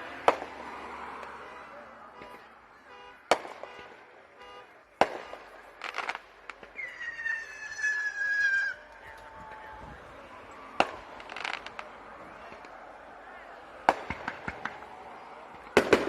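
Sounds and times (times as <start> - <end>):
firework bangs: 0.0 - 1.5, 2.2 - 8.5, 9.4 - 16.0
firework crackle: 5.0 - 9.2, 9.8 - 12.7, 13.8 - 16.0
falling firework whistle: 6.7 - 8.8.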